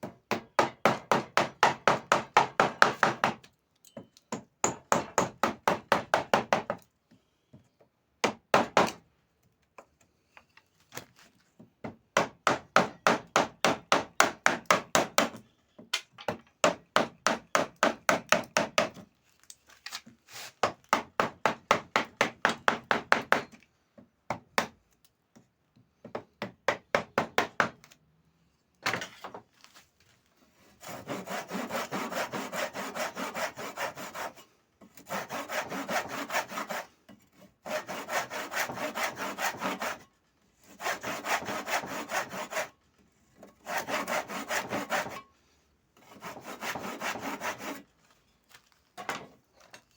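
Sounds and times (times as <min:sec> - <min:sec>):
hand tool scraping wood: 0:30.6 - 0:42.8, 0:43.4 - 0:45.3, 0:46.0 - 0:47.9.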